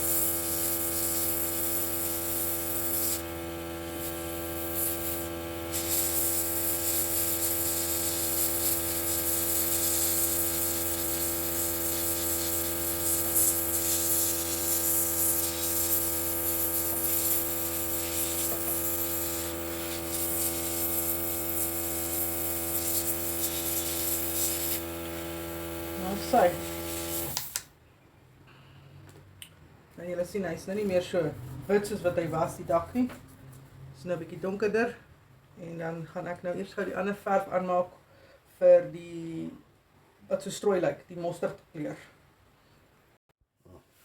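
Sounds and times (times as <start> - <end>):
airbrush compressor humming: 0.0 - 27.6
airbrush hissing: 0.0 - 27.6.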